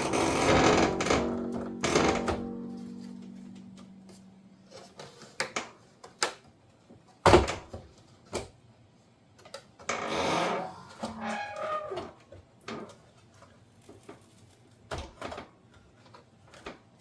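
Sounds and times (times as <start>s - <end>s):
loud knock: 0.0s - 4.2s
ringing tone: 0.0s - 4.7s
scraping: 0.0s - 5.3s.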